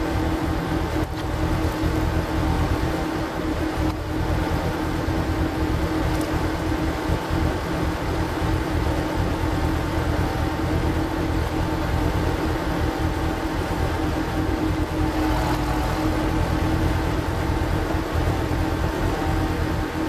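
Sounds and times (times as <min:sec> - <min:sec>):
power tiller engine running: 0:11.6 - 0:20.0.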